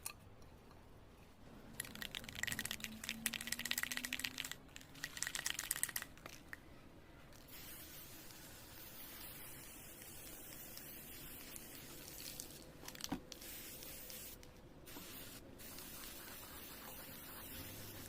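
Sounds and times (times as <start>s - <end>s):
spray can ball rattling: 1.8s - 6.6s, 7.3s - 18.0s
spray can hissing: 7.4s - 12.6s, 13.3s - 18.0s.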